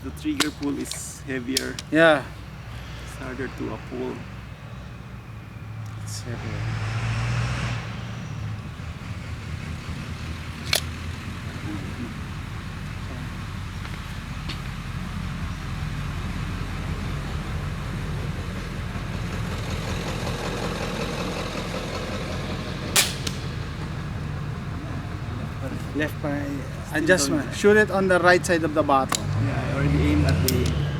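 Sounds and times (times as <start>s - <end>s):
air pistol shot crack: 22.9s - 23.7s.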